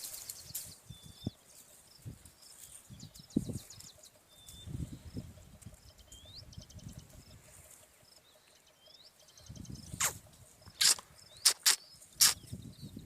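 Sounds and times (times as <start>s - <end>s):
birds chirping: 0.0s - 13.0s
loud rasping bird bursts: 9.9s - 12.5s.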